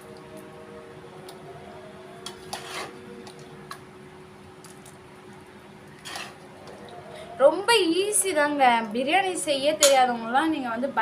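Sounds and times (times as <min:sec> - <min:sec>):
faint steady hum: 0:00.0 - 0:11.0
spoon scraping a metal pot: 0:02.3 - 0:03.0, 0:06.0 - 0:06.4.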